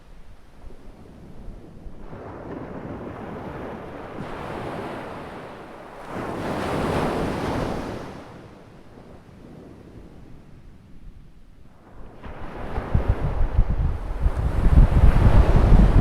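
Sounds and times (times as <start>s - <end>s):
ocean waves breaking: 0.5s - 8.8s, 11.7s - 16.0s.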